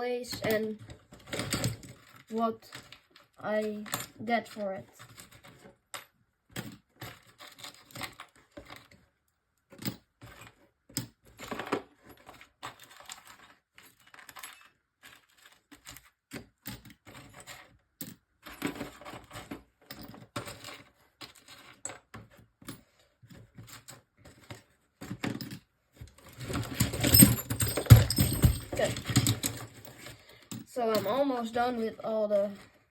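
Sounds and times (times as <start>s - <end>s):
scrap metal clinking and clattering: 23.6s - 32.8s.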